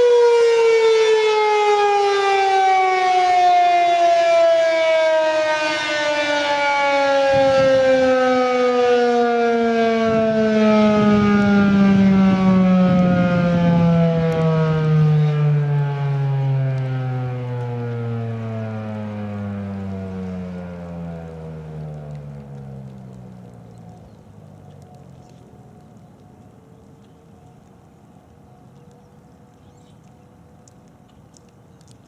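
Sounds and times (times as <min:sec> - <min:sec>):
siren winding down: 0:00.0 - 0:24.1.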